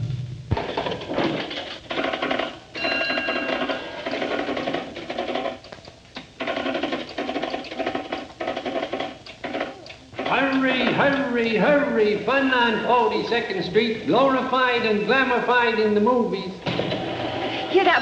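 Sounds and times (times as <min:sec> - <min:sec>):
rapid mechanical clattering: 0:00.6 - 0:11.4.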